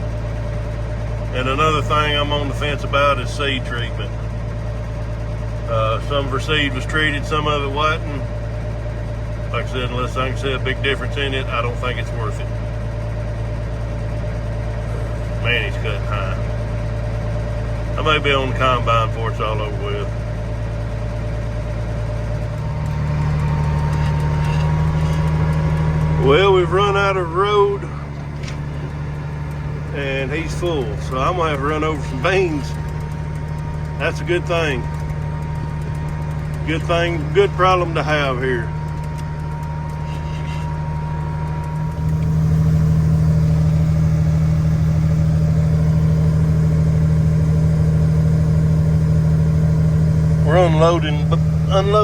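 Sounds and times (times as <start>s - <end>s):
tractor diesel engine running: 0.0s - 52.0s.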